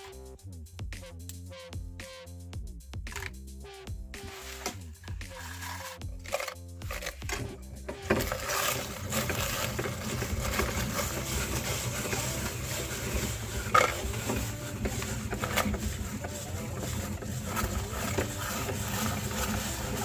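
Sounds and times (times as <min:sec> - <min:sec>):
music: 0:00.0 - 0:20.0
meat grinder humming: 0:05.4 - 0:20.0
biscuits crackling and crunching: 0:08.1 - 0:20.0.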